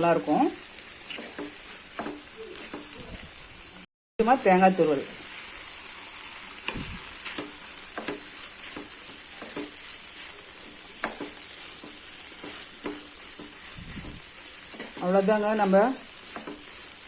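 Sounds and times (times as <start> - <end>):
fish sizzling in a pan: 0.0 - 17.0
utensil tapping and scraping pan: 1.0 - 3.1, 6.6 - 13.8, 14.5 - 15.2, 16.1 - 16.9.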